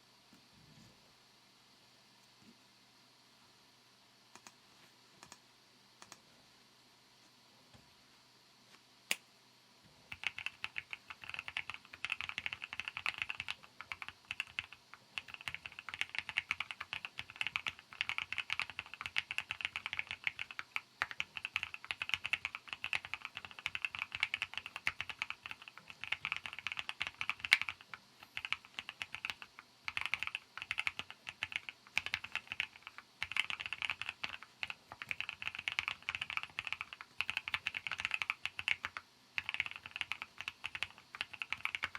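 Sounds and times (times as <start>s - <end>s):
mechanical keyboard typing: 10.1s - 41.9s.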